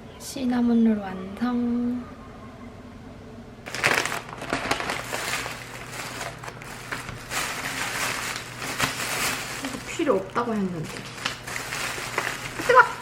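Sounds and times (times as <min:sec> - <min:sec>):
packaging rustling and crinkling: 0:03.7 - 0:13.0.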